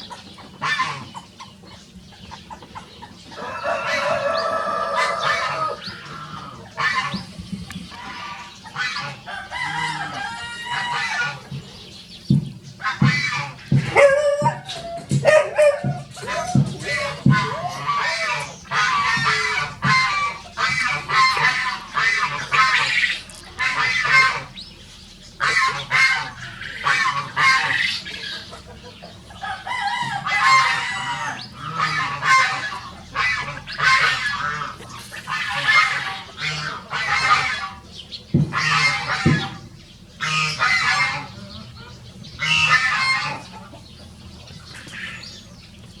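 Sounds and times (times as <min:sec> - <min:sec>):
poultry honking calls: 0:00.0 - 0:45.9.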